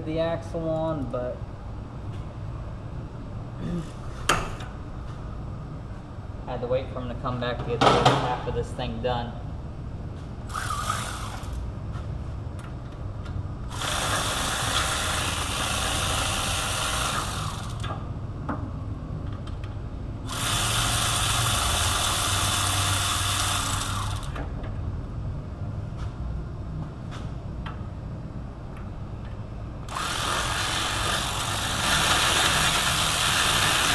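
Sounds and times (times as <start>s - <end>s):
steady low hum: 0.0s - 33.9s
power tool spinning out bolts: 29.9s - 33.9s.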